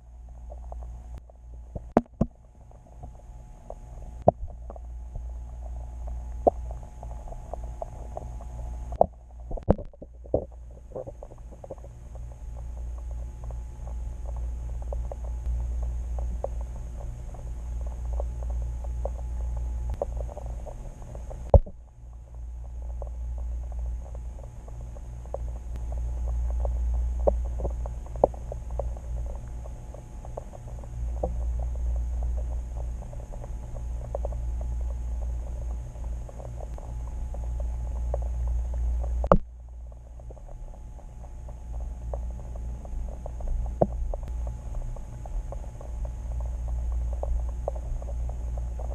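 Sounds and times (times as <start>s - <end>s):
faint high whine: 0.0s - 48.9s
underwater low rumble: 0.0s - 48.9s
small underwater clicks: 0.1s - 48.9s.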